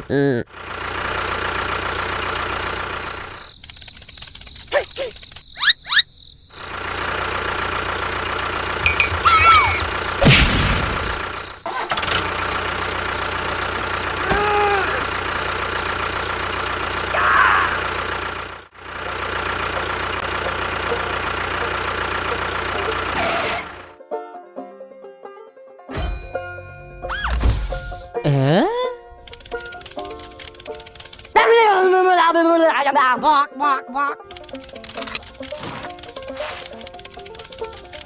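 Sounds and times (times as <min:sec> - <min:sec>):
small motor running: 0:00.8 - 0:06.0, 0:11.2 - 0:18.6, 0:29.2 - 0:31.4, 0:34.3 - 0:38.0
short high calls: 0:04.7 - 0:06.2, 0:08.8 - 0:10.0.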